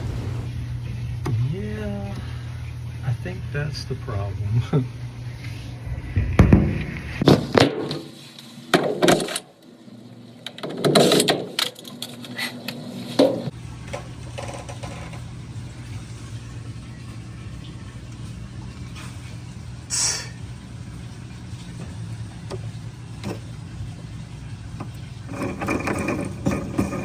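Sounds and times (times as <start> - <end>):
washer motor humming: 0.0 - 27.0
washer clunks and knocks: 6.0 - 9.4.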